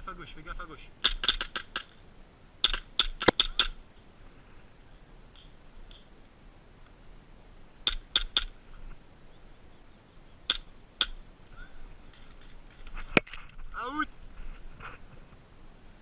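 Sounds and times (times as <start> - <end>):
airsoft gun shots clicking: 1.0 - 2.0, 2.6 - 3.8, 7.8 - 8.5, 10.5 - 11.2.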